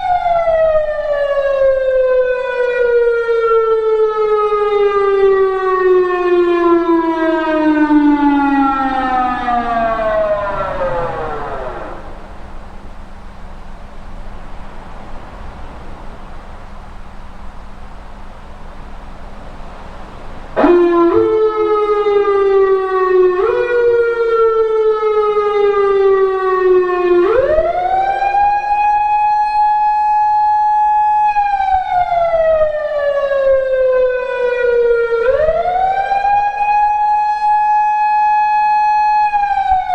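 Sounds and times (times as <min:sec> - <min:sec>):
electronic siren wailing: 0:00.0 - 0:39.9
faint hum: 0:07.6 - 0:21.4.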